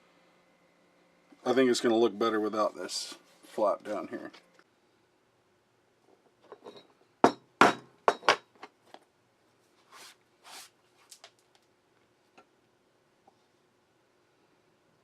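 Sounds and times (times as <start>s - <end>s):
sharp knocks of hand tools: 7.2s - 8.4s.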